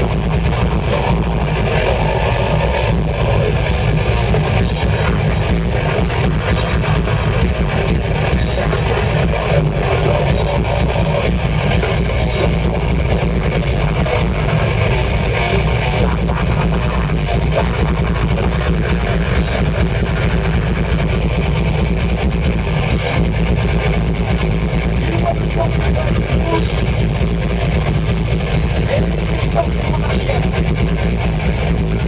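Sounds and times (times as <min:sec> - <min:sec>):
rock band playing live: 0:00.0 - 0:32.0.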